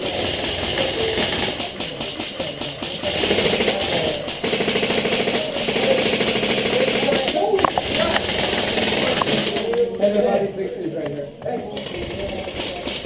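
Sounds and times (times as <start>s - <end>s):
airsoft rifle firing full auto: 0.0s - 9.8s.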